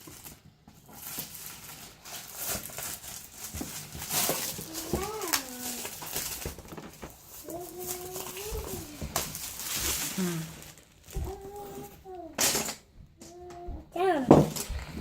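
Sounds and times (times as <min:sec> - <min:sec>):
puzzle pieces clicking and rustling: 0:01.0 - 0:11.2.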